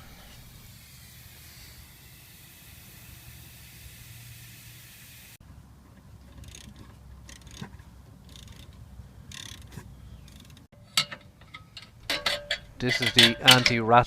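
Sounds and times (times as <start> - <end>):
steady hiss: 0.0 - 5.4
hand tools scraping and clicking: 5.9 - 14.0.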